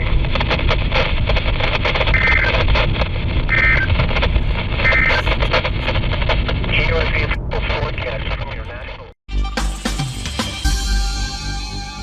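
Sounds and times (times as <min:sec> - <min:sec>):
radio static: 0:00.0 - 0:09.2.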